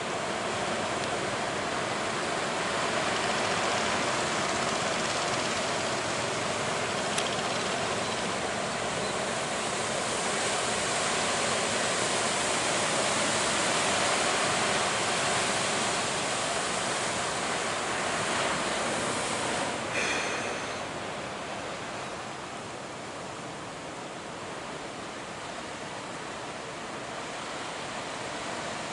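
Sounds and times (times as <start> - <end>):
ocean surf breaking: 7.8 - 28.9.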